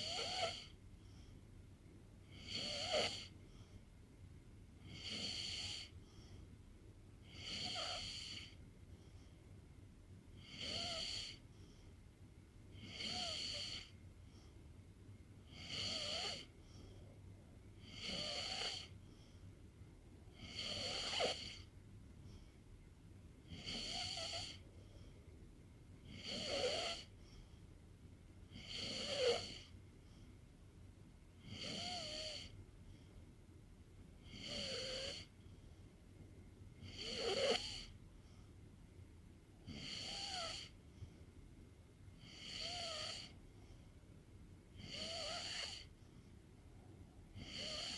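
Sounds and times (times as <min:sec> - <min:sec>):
pet snoring: 0:00.0 - 0:00.8, 0:02.2 - 0:03.4, 0:04.8 - 0:06.0, 0:07.2 - 0:08.6, 0:10.4 - 0:11.4, 0:12.7 - 0:14.0, 0:15.5 - 0:16.6, 0:17.8 - 0:19.0, 0:20.3 - 0:21.7, 0:23.4 - 0:24.6, 0:26.0 - 0:27.2, 0:28.5 - 0:29.7, 0:31.4 - 0:32.6, 0:34.2 - 0:35.4, 0:36.8 - 0:38.0, 0:39.6 - 0:40.8, 0:42.2 - 0:43.4, 0:44.7 - 0:45.9, 0:47.3 - 0:47.9.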